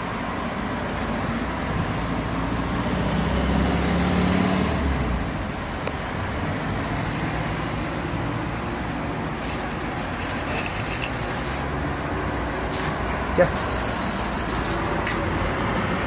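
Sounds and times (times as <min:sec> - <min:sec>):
steady road hum: 0:00.0 - 0:16.0
vehicle engine passing: 0:02.5 - 0:05.3.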